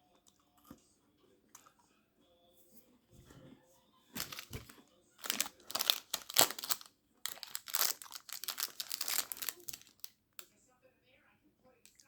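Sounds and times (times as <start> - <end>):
plastic wrapper crinkling: 4.2 - 10.2.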